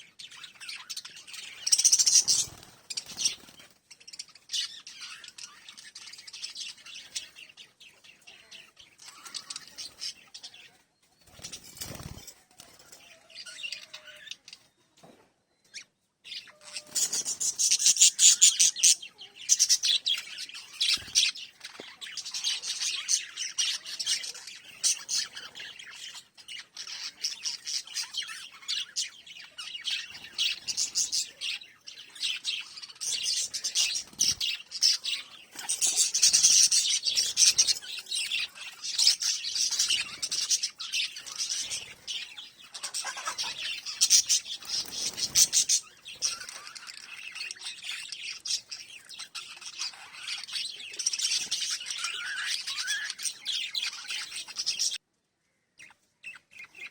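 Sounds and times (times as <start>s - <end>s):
parrots chirping and chattering: 0.0s - 56.9s.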